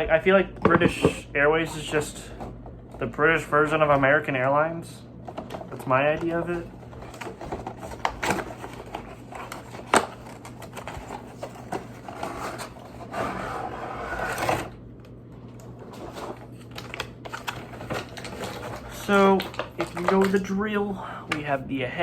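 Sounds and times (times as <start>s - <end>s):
packaging rustling: 5.3s - 13.5s, 15.8s - 20.6s.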